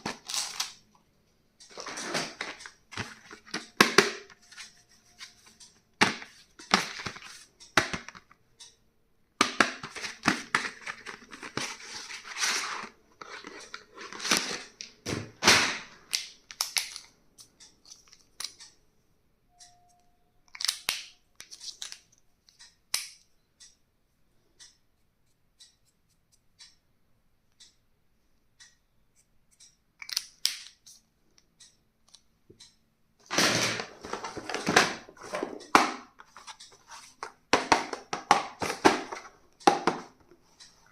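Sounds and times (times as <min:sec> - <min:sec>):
clicks and taps of items: 0:01.6 - 0:08.8, 0:09.4 - 0:18.8, 0:29.6 - 0:40.9.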